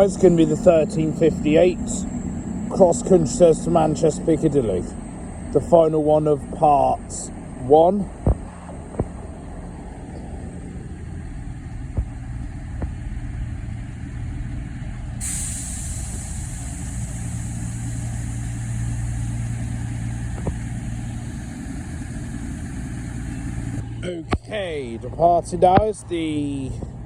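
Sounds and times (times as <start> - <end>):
train diesel engines humming: 0.0 - 27.0
loud air hiss: 15.2 - 23.8.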